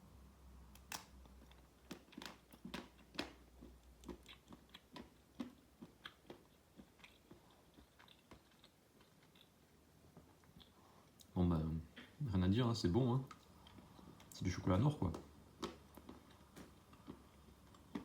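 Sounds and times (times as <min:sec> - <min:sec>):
chocolate snapping: 0:00.7 - 0:09.5
crisp chewing crunches: 0:01.2 - 0:09.6.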